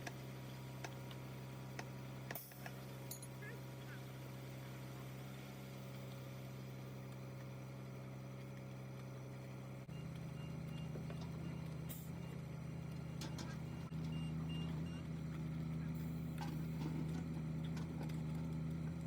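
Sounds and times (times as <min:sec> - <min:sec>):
large engine running: 0:00.0 - 0:19.0
faint high beeps: 0:09.9 - 0:12.5, 0:13.1 - 0:15.1.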